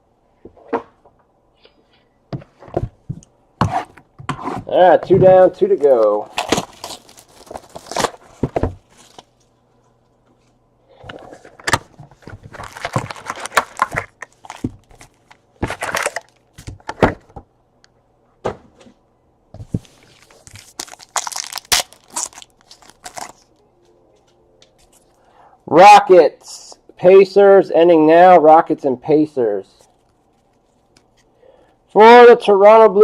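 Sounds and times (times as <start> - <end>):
plastic wrappers crinkling and tearing: 5.8 - 9.5, 12.2 - 16.8, 19.8 - 23.6.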